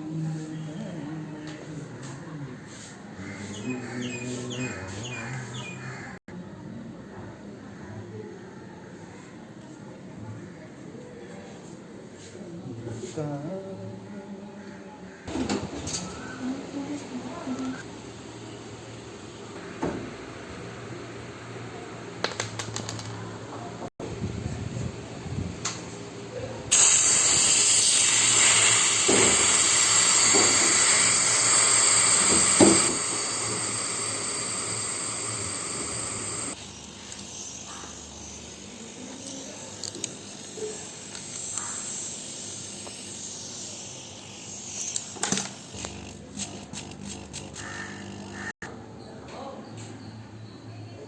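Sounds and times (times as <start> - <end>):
pressurised gas hissing: 26.7 - 45.8.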